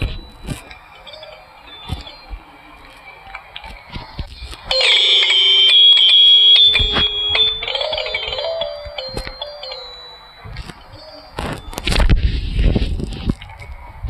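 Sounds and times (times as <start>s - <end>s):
electronic phone ringtone: 4.7s - 11.8s.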